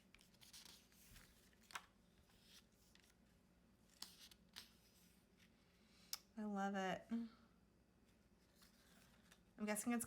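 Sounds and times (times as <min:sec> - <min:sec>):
paper pages rustling: 0:00.0 - 0:03.2, 0:03.9 - 0:05.6.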